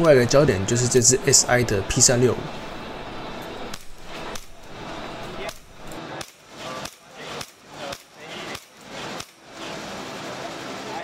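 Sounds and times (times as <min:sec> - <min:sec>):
background chatter: 0:00.0 - 0:11.0
sharp clicks: 0:03.4 - 0:09.4.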